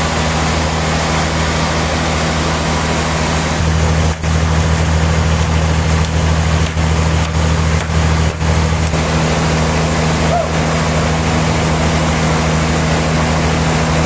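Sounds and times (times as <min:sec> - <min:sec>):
heavy machinery running: 0:00.0 - 0:14.0.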